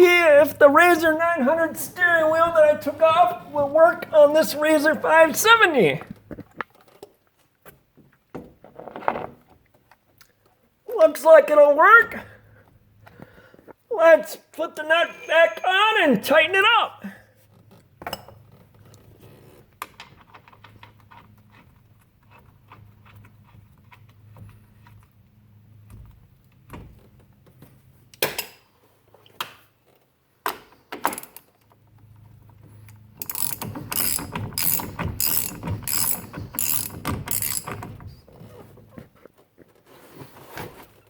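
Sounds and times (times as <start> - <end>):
hand ratchet clicking: 33.2 - 38.0.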